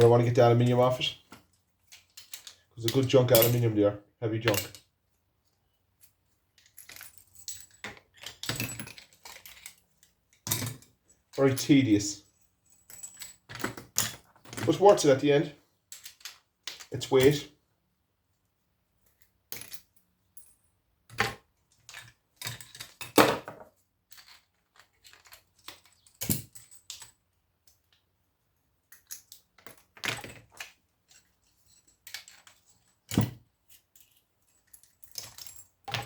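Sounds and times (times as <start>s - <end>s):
scrap metal clinking and rattling: 6.0s - 15.1s, 19.6s - 27.2s, 29.0s - 36.0s.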